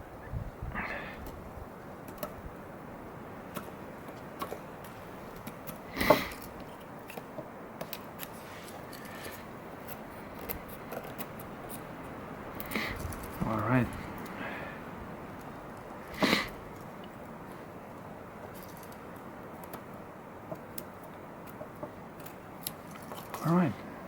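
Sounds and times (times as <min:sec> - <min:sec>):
knife carving wood: 0:03.4 - 0:14.4, 0:20.5 - 0:23.5.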